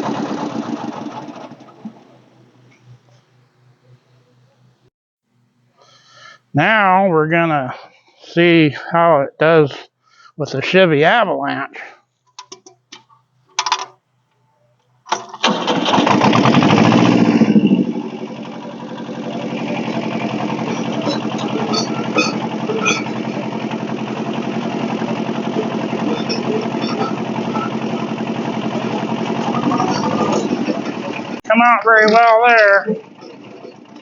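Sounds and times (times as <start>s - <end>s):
mini dozer engine starting and revving: 0.0s - 4.9s, 15.1s - 31.4s, 32.0s - 34.0s.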